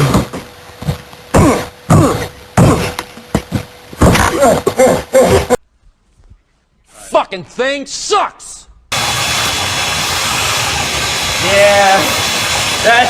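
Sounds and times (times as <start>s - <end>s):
man coughing and grunting: 1.3s - 3.0s, 4.2s - 5.6s.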